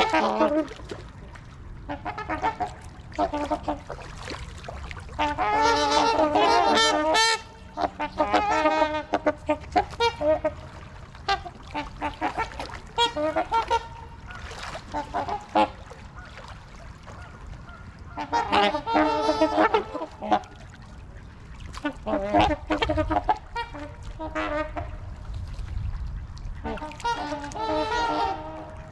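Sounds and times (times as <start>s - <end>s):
swans honking: 0.0s - 0.9s, 1.8s - 4.0s, 5.1s - 20.6s, 21.8s - 25.0s, 26.6s - 28.9s.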